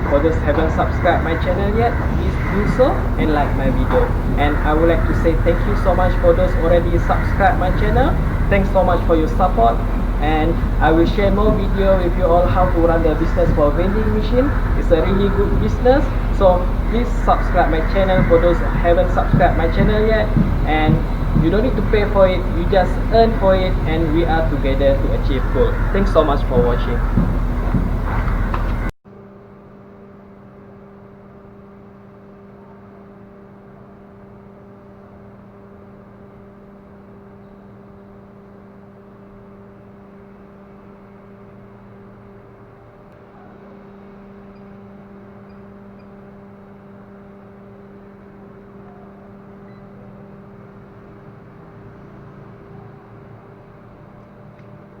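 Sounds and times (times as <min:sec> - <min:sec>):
machine hum: 0:00.0 - 0:29.0.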